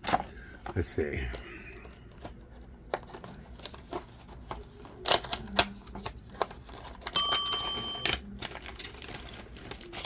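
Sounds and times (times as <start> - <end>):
toy car and packaging handled: 1.8 - 10.0
bright metallic ring: 7.2 - 8.2.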